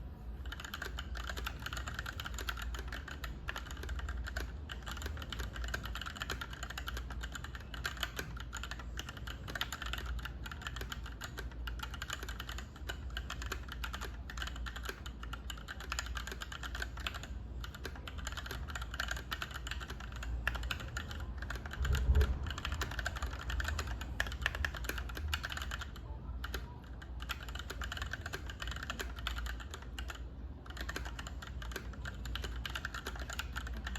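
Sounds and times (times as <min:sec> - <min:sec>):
mechanical keyboard key clacks: 0:00.4 - 0:33.9.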